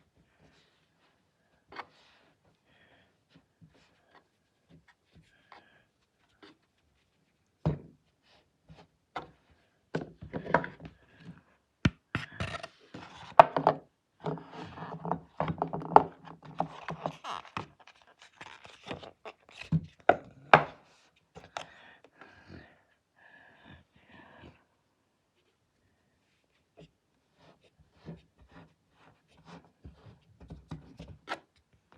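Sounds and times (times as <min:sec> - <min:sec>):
knocks and scrapes of handling: 0:03.6 - 0:21.6, 0:26.4 - 0:31.9.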